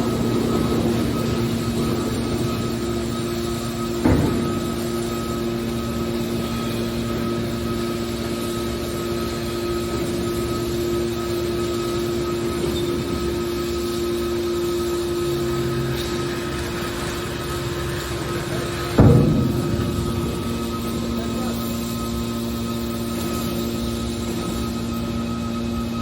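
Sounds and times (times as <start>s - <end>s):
electric motor and pump humming: 0.0s - 26.0s
sharp metal clunk: 4.0s - 5.0s, 18.9s - 22.5s.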